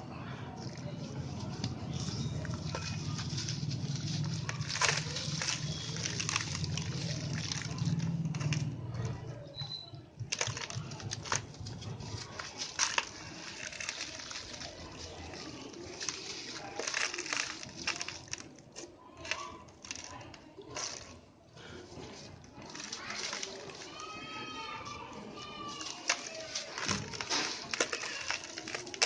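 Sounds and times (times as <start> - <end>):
concrete crumbling: 0.5 - 29.0.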